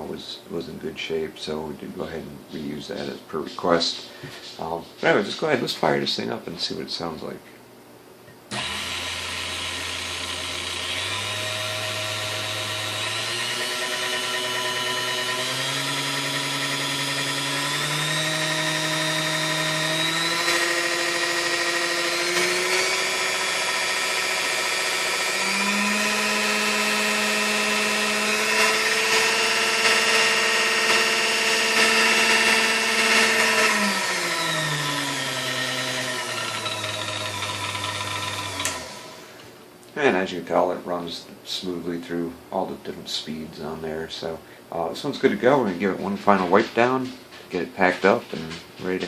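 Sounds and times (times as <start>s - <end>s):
stand mixer motor humming: 8.5s - 39.3s.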